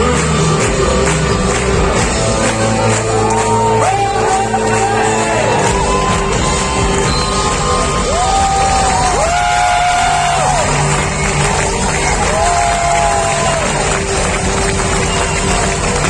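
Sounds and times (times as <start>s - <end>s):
audience shouting and whooping: 3.0s - 16.0s.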